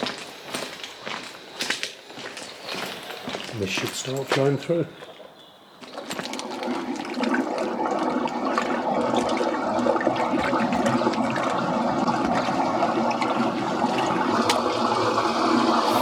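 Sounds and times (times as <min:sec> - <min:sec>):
wastewater rushing through drain: 0:03.6 - 0:16.0.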